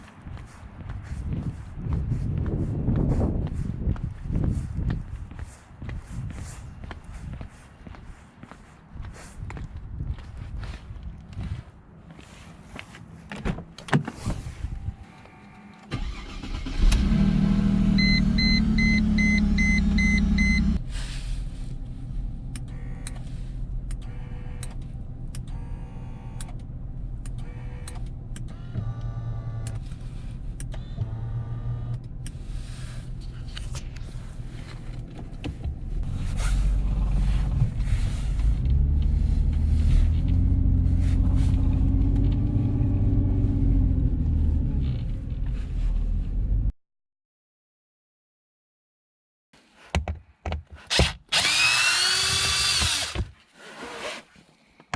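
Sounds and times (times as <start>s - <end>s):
warning beeps: 18.0s - 20.8s.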